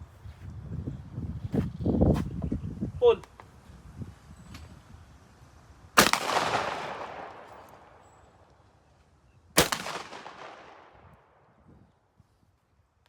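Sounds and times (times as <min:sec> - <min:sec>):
shotgun shots with echo: 0:06.0 - 0:08.1, 0:09.6 - 0:11.0.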